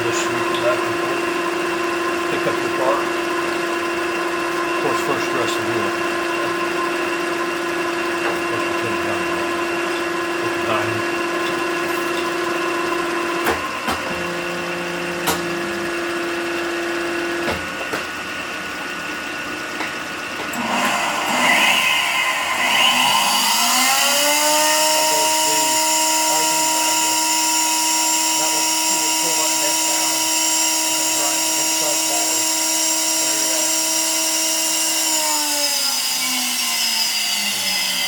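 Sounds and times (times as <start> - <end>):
grinder motors humming: 0.0 - 38.0
motor whine winding up: 20.5 - 38.0.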